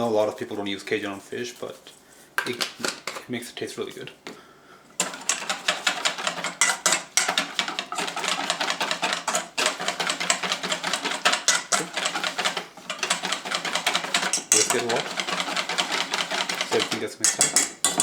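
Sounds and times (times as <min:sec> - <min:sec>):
whisk clicking against bowl: 0:05.0 - 0:18.0.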